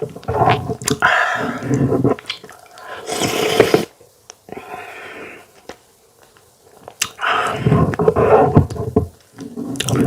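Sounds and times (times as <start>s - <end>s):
wet mouth eating sounds: 0.2s - 3.9s, 6.8s - 8.0s, 9.7s - 10.0s.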